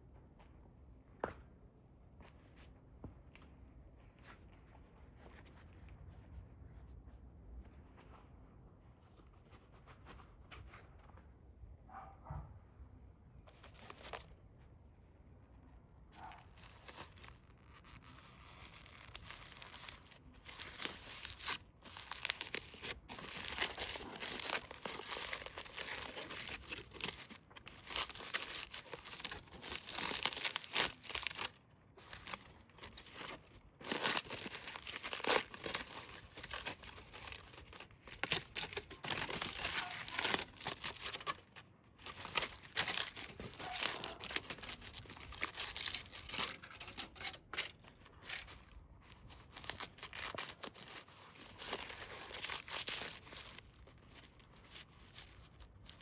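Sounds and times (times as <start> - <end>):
foil crinkling and tearing: 13.5 - 14.3, 16.1 - 56.0.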